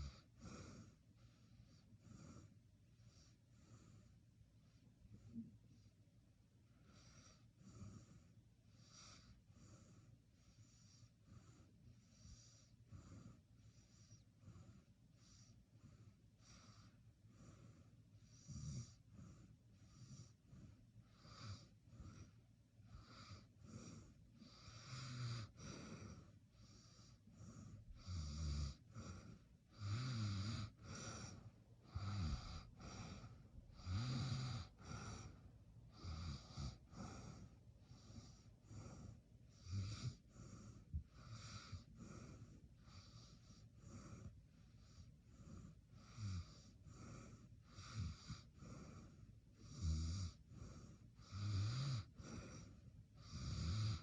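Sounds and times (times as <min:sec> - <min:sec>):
person snoring: 0:23.0 - 0:54.0.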